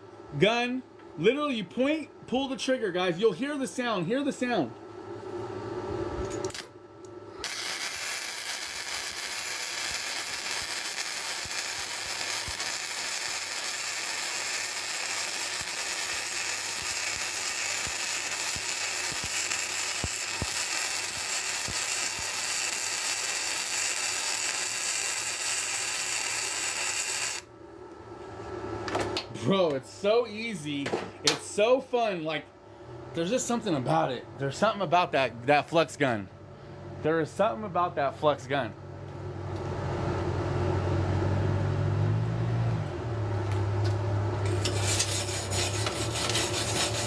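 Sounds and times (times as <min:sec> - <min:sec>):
welder arc crackling: 0:06.4 - 0:06.7, 0:07.4 - 0:27.5.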